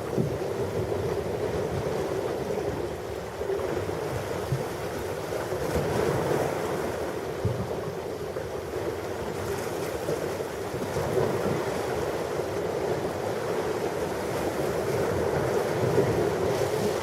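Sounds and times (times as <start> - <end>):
ocean waves washing: 9.2 - 17.0.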